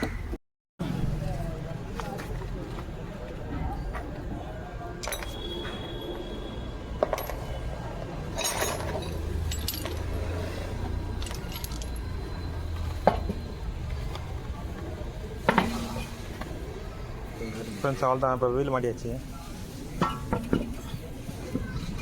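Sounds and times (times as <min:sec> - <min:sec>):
metal tools clinking: 0:05.0 - 0:05.5, 0:08.2 - 0:12.3.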